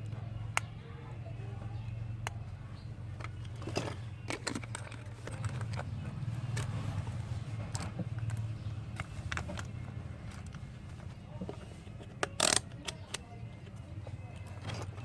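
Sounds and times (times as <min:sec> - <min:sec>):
small clicks and taps: 0:07.6 - 0:15.0.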